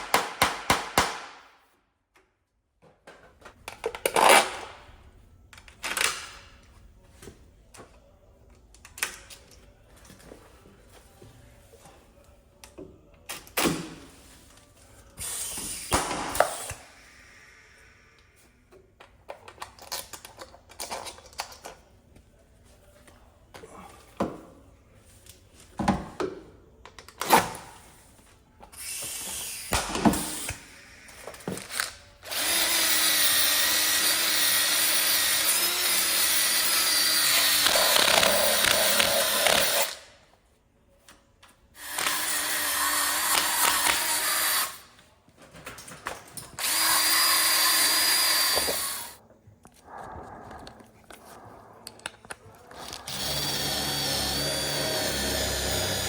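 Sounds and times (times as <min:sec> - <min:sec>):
power tool whining: 0:46.6 - 0:49.2, 0:53.1 - 0:56.0.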